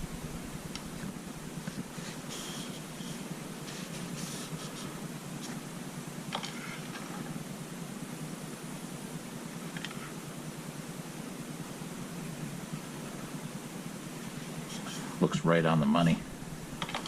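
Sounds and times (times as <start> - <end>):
dipstick scraping and rustling: 14.7 - 15.2.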